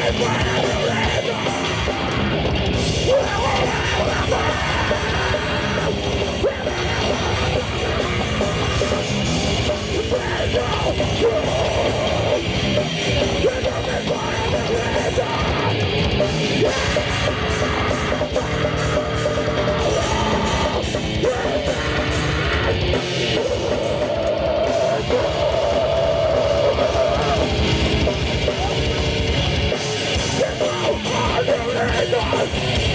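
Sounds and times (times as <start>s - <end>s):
heavy metal band playing: 0.0s - 32.9s.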